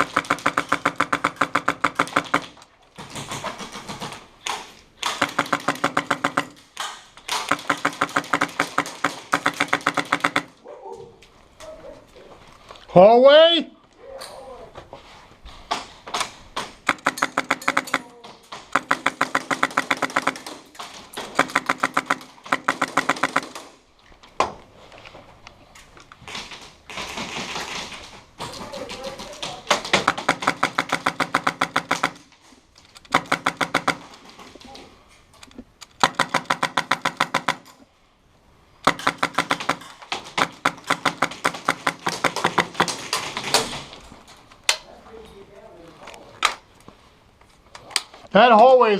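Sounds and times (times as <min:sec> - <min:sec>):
airsoft guns firing full auto: 0:00.0 - 0:10.6, 0:16.7 - 0:23.8, 0:26.3 - 0:32.3, 0:33.1 - 0:34.2, 0:36.0 - 0:37.7, 0:38.8 - 0:44.0.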